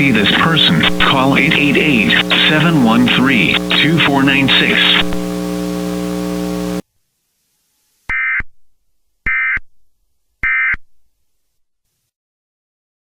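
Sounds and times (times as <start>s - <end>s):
buzzy digital data bursts: 0.0s - 6.8s
steady hum: 0.0s - 6.8s.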